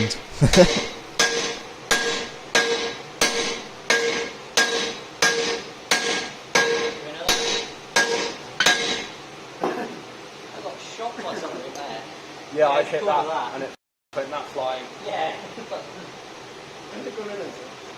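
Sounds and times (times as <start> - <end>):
hammer blows on hot steel: 0.0 - 9.2.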